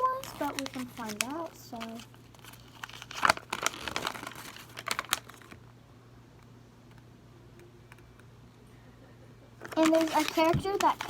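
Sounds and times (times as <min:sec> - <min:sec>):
packaging crinkling and clicking: 0:00.0 - 0:05.6, 0:09.6 - 0:11.0.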